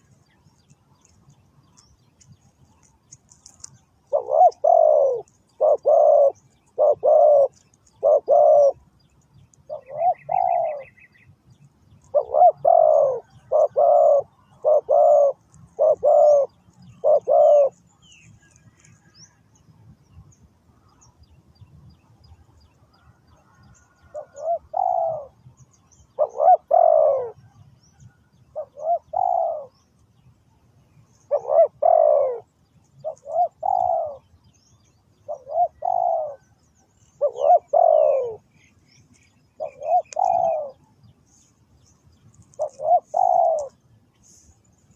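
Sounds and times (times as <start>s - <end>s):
small birds chirping: 0.0s - 44.9s
dove cooing: 3.3s - 8.9s, 9.6s - 11.2s, 11.9s - 19.1s, 23.6s - 29.9s, 31.2s - 34.4s, 35.2s - 44.5s.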